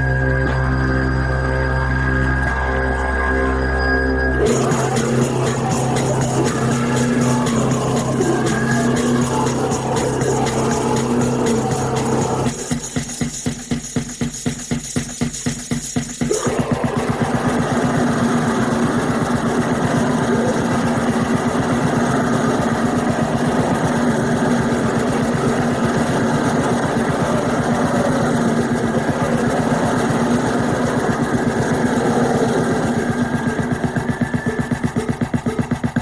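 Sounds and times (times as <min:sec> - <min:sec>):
steady low drone: 0:00.0 - 0:13.2, 0:16.3 - 0:36.0
harsh electronic noise music: 0:00.0 - 0:36.0.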